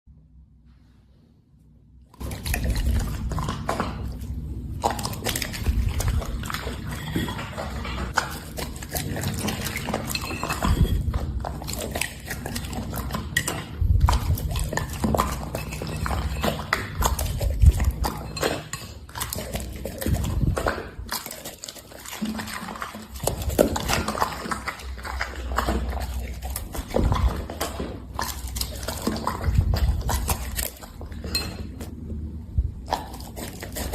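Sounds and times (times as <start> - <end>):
dishes and utensils clinking: 5.0 - 29.6, 30.2 - 31.9.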